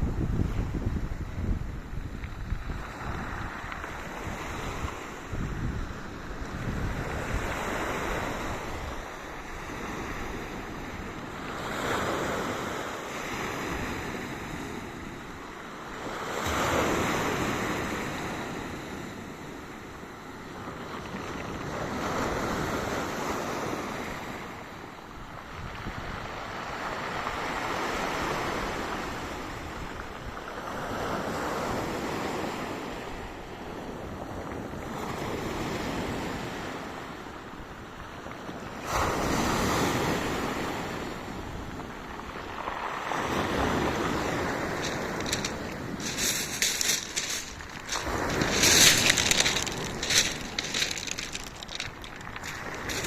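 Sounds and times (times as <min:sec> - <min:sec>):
wind on microphone: 0:00.0 - 0:11.7
waves breaking on beach: 0:00.0 - 0:53.0.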